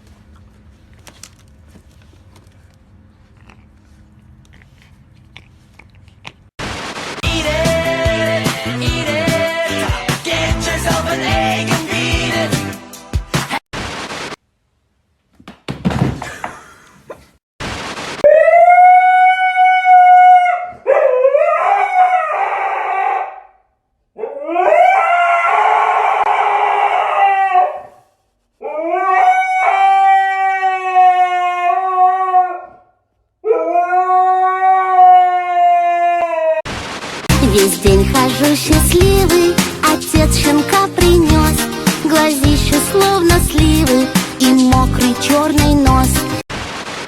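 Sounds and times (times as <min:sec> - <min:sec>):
dog howling: 0:18.3 - 0:23.4, 0:24.2 - 0:28.0, 0:28.6 - 0:32.8, 0:33.4 - 0:36.6.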